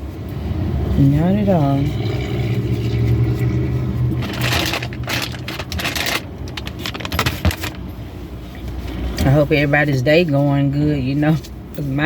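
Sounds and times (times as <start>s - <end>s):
food packaging crinkling: 4.2s - 7.9s.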